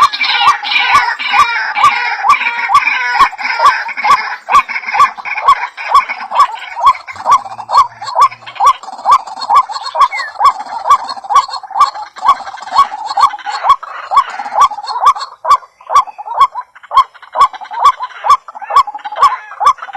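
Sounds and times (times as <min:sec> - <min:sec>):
bird calling short hooked notes: 0:09.9 - 0:10.4.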